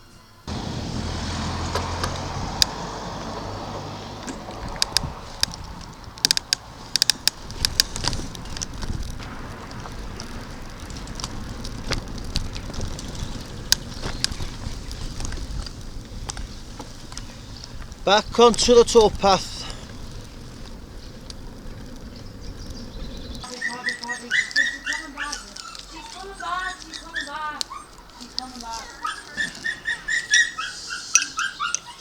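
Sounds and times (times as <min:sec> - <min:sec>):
bicycle tyres on rough path: 0:00.4 - 0:32.0
low rumble: 0:00.5 - 0:23.5
bike clicks and rattles: 0:01.5 - 0:32.0.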